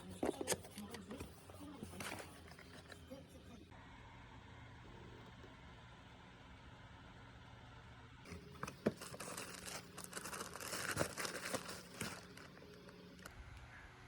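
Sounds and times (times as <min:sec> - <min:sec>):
packaging crinkling and rustling: 0:08.3 - 0:13.3.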